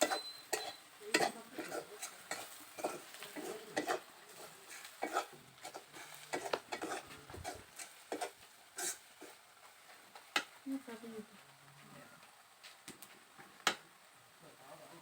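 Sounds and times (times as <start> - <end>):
spoon scraping in a pan: 0.0 - 10.7
faint sizzle of frying oil: 0.0 - 15.0.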